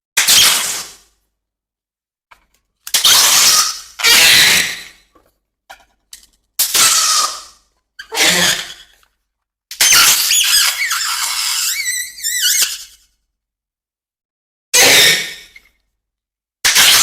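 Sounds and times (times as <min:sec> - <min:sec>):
balloons popping: 0:00.2 - 0:01.0, 0:02.9 - 0:04.9, 0:06.6 - 0:07.6, 0:16.6 - 0:17.0.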